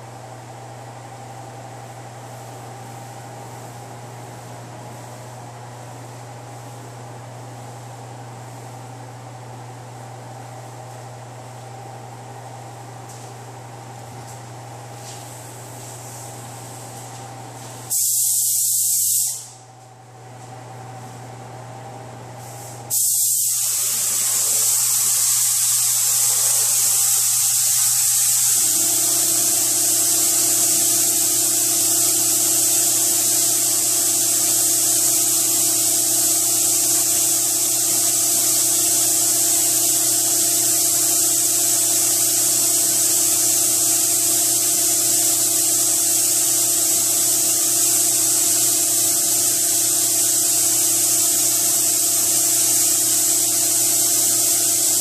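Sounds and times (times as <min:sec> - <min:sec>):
paint spray gun hissing: 0:17.9 - 0:19.6, 0:22.4 - 0:55.0.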